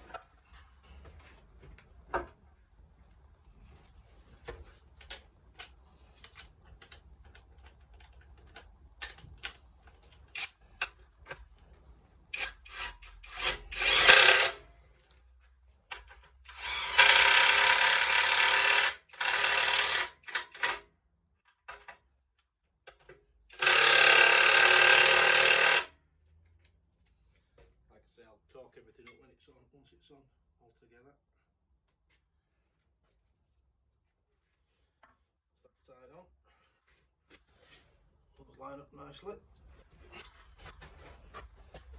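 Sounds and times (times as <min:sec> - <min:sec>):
metal parts clicking: 0:05.0 - 0:10.9, 0:12.4 - 0:14.6, 0:15.9 - 0:20.8
power driver spinning bolts: 0:12.4 - 0:14.6, 0:16.5 - 0:20.8, 0:23.5 - 0:25.9.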